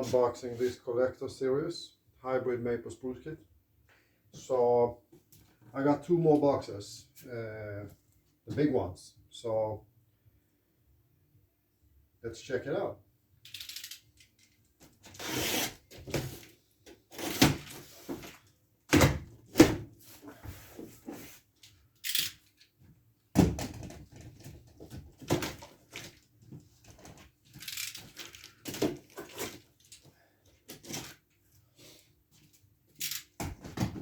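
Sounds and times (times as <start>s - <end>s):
cardboard and tape tearing: 15.0s - 16.5s, 17.1s - 18.2s.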